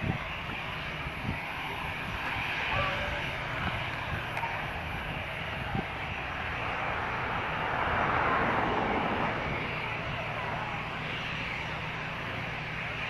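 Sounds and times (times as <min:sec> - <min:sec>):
aircraft engines running: 0:00.0 - 0:13.0.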